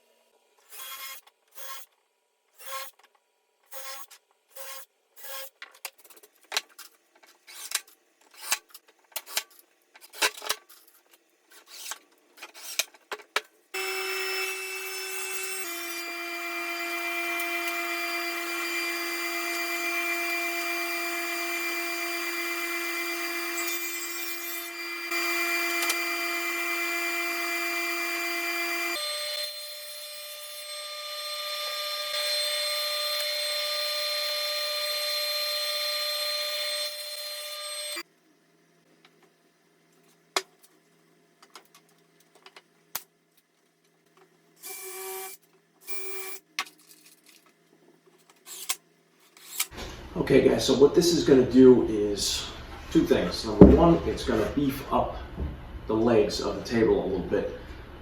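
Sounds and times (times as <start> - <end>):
power tool whining: 13.8 - 38.0.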